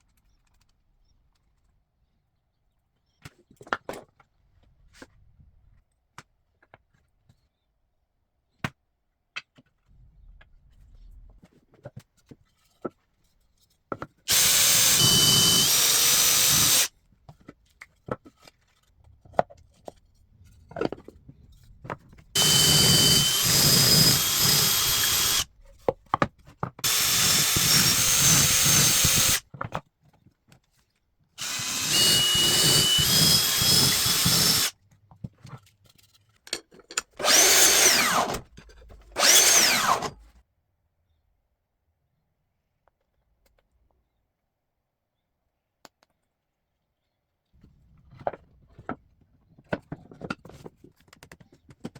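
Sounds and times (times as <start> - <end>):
electric drill boring wood: 14.3 - 16.9, 22.4 - 25.5, 26.8 - 29.4, 31.4 - 34.7, 37.2 - 38.4, 39.2 - 40.2.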